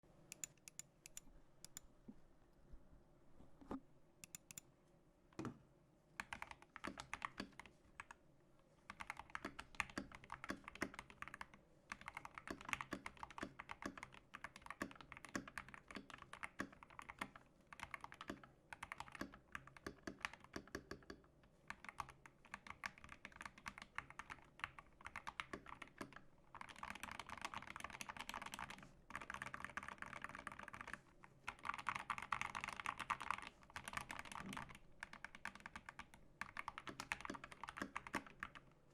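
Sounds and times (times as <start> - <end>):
typing on mechanical keyboard: 6.2 - 8.2, 8.9 - 38.7.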